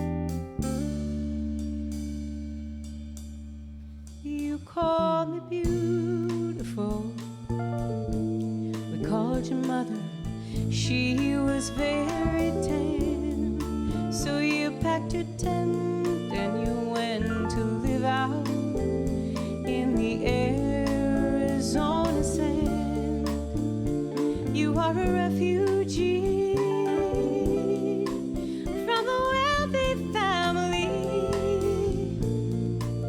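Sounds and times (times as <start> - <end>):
live band playing: 0.0 - 3.3, 5.7 - 33.0
drum hits: 16.4 - 33.0.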